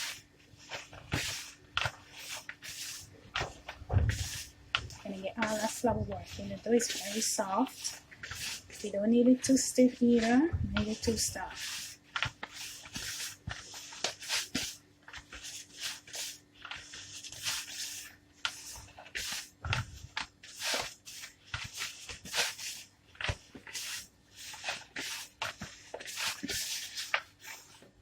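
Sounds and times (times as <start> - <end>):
dough being kneaded by hand: 0.0 - 28.0
heavy thump: 3.8 - 4.3.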